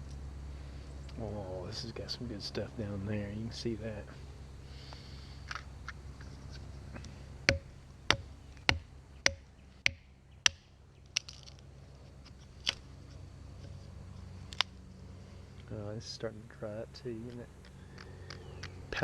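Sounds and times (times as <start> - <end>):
hatchet chopping wood: 7.5 - 11.4
handling clicks: 17.3 - 19.0.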